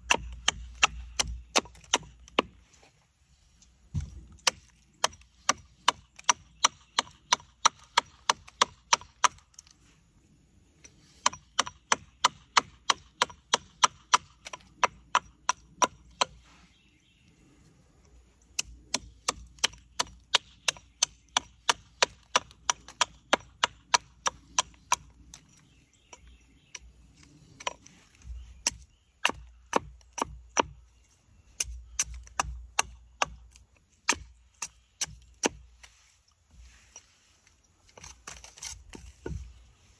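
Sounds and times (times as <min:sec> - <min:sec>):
hatchet chopping wood: 0:00.0 - 0:02.6, 0:03.9 - 0:09.7, 0:11.1 - 0:16.4, 0:18.5 - 0:30.8, 0:31.5 - 0:35.8.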